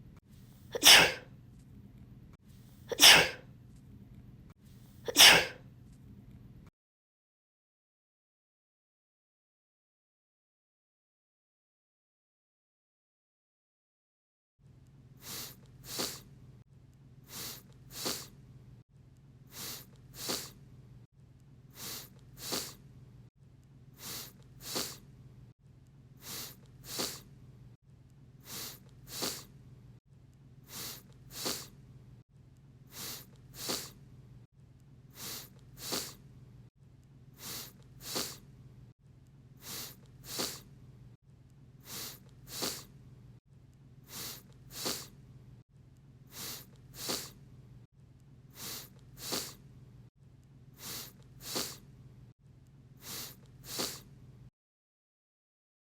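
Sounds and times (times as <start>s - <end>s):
person sniffling: 0.7s - 1.3s, 2.8s - 3.4s, 5.0s - 5.6s, 15.2s - 16.3s, 17.3s - 18.4s, 19.5s - 20.6s, 21.7s - 22.8s, 24.0s - 25.0s, 26.2s - 27.3s, 28.4s - 29.5s, 30.7s - 31.8s, 32.9s - 34.0s, 35.1s - 36.2s, 37.4s - 38.4s, 39.6s - 40.7s, 41.8s - 42.9s, 44.1s - 45.2s, 46.3s - 47.4s, 48.5s - 49.6s, 50.8s - 51.8s, 53.0s - 54.1s.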